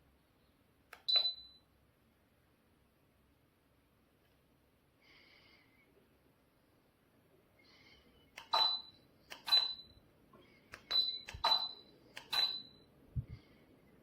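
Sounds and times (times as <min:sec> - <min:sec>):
button clicks: 0:08.4 - 0:09.8, 0:10.8 - 0:12.7
short high beeps: 0:08.5 - 0:10.0, 0:10.9 - 0:12.9.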